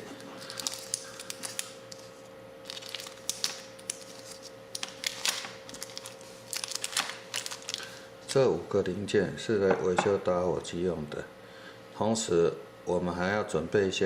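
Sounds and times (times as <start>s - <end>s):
faint hum: 0.0s - 14.0s.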